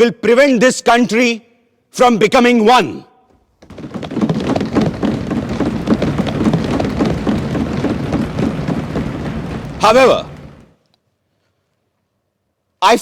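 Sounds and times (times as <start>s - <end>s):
audience applauding: 3.6s - 10.7s.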